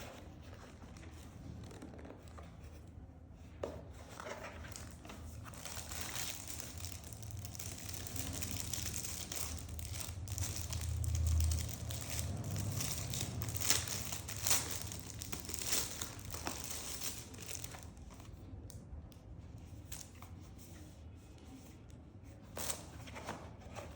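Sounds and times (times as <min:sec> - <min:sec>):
packaging crinkling and rustling: 0:04.0 - 0:18.4.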